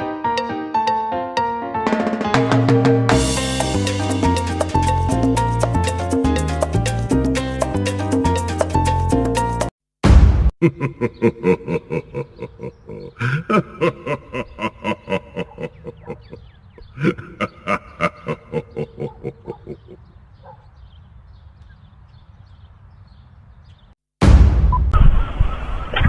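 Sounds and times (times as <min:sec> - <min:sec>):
pig grunting rapidly: 0:14.8 - 0:20.1.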